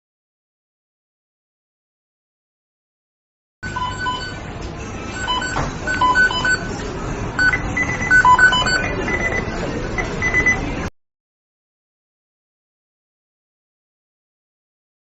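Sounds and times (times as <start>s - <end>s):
short electronic beeps: 3.6s - 4.4s, 5.1s - 6.8s, 7.4s - 10.7s.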